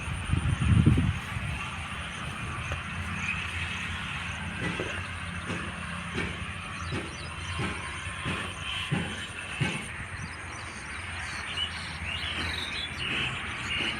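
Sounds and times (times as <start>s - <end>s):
combine harvester running: 0.0s - 13.9s
regular machine knock: 4.4s - 10.3s.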